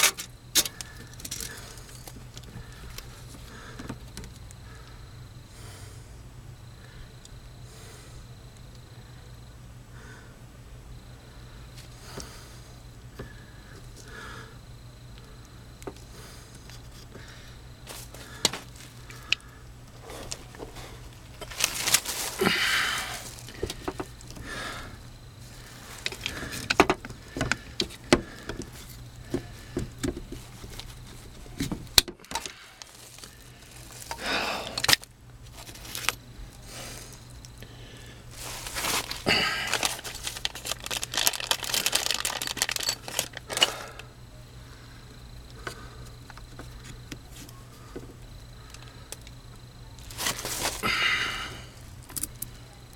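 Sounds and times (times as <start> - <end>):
scraping and crinkling: 15.9 - 24.7, 25.4 - 37.5, 38.3 - 44.0, 50.0 - 50.9.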